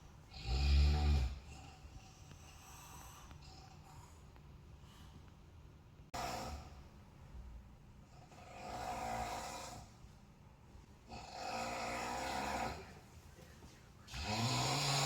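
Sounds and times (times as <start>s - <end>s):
person snoring loudly: 0.3s - 1.8s, 8.3s - 9.9s, 11.1s - 13.0s, 14.1s - 15.0s.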